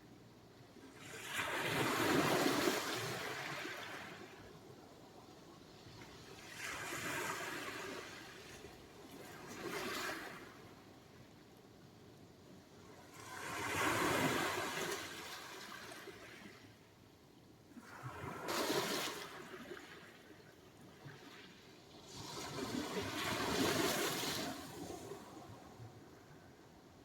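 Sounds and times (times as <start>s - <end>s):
waves breaking: 22.0s - 25.8s.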